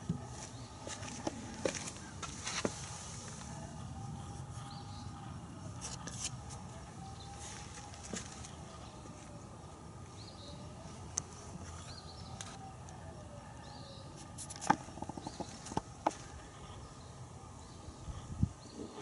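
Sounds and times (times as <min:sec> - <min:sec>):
faint bird chirps: 0:03.3 - 0:19.0.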